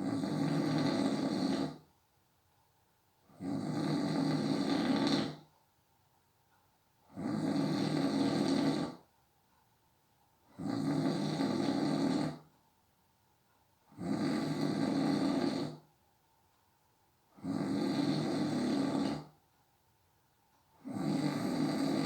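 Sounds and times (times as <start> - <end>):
person snoring: 0.0 - 1.8, 3.3 - 5.4, 7.1 - 9.0, 10.5 - 12.5, 13.9 - 15.8, 17.3 - 19.3, 20.8 - 22.0.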